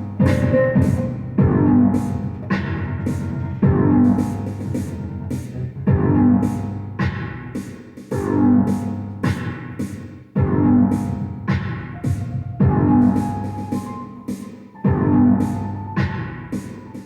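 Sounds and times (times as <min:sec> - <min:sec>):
ambient synthesizer music: 0:00.0 - 0:06.6, 0:11.8 - 0:17.0.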